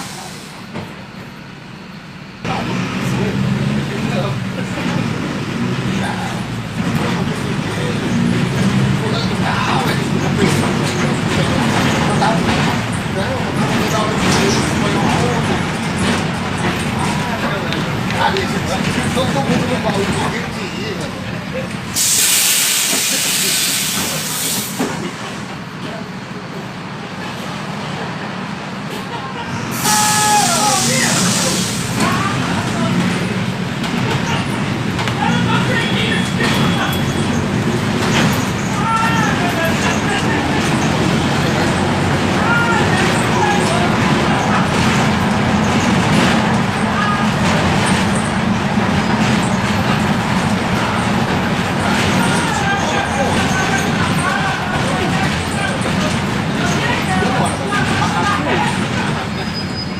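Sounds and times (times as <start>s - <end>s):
loud compressed-air hiss: 0.0s - 0.7s, 21.9s - 25.0s, 29.7s - 32.1s
diesel bus engine rumbling: 0.0s - 59.9s.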